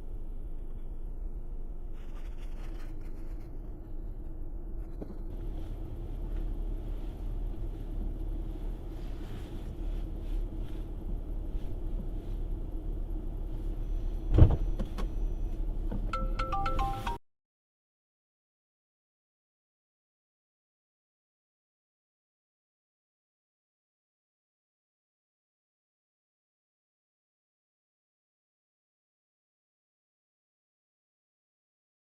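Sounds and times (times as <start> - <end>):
car driving rumble: 0.0 - 17.2
short beeps: 13.8 - 17.2.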